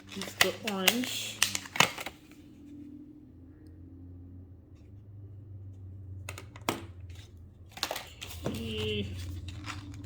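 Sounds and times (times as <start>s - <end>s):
plastic packaging clicks and taps: 0.1s - 2.2s.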